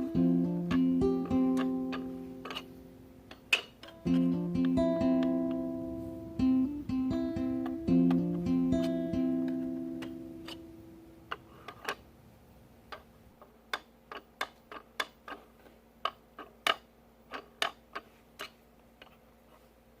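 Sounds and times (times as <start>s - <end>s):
acoustic guitar chord: 4.0s - 11.1s.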